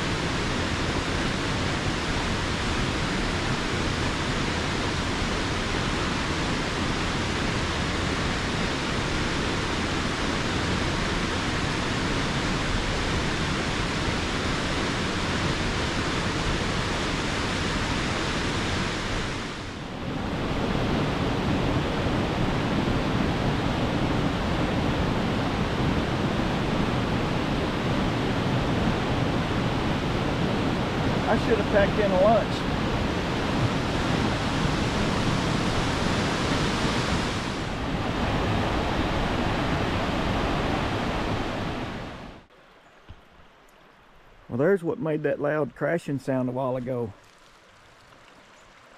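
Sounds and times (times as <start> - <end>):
waterfall rushing: 28.8 - 42.2.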